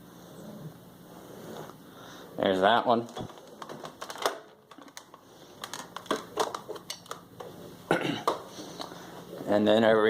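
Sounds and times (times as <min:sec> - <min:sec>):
handling clicks and knocks: 0:03.0 - 0:07.6.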